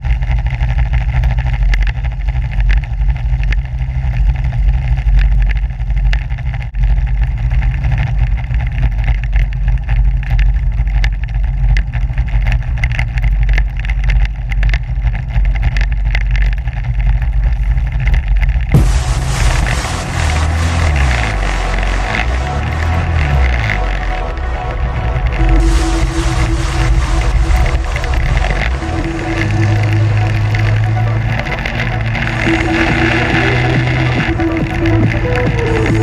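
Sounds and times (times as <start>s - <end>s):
atv engine running: 0.0s - 36.0s.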